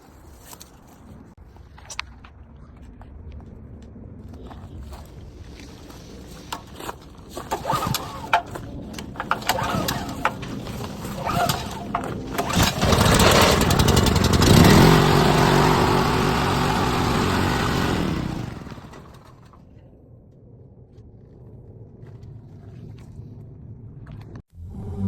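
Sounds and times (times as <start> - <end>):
small gas engine running: 5.8 - 19.6.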